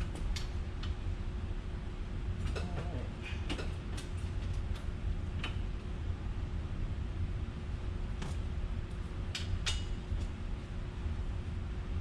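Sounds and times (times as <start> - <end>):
low machinery hum: 0.0 - 12.0.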